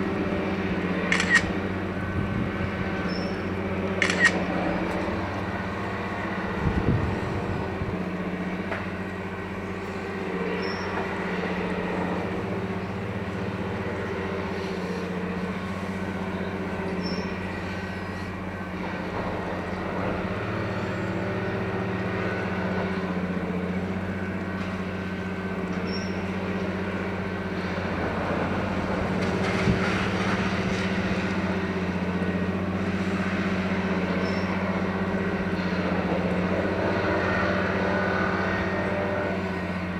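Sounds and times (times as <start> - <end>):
machine engine humming: 0.0 - 39.9.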